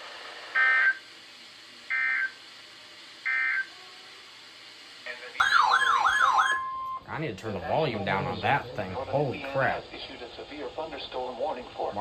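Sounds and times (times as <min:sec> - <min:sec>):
faint hiss: 0:00.0 - 0:05.4
warbling alarm tone: 0:00.6 - 0:01.0, 0:05.4 - 0:07.0.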